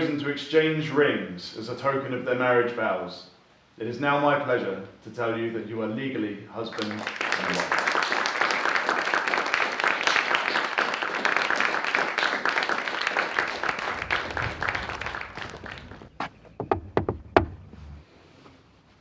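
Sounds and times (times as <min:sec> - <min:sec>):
crowd applauding: 0:06.7 - 0:16.1.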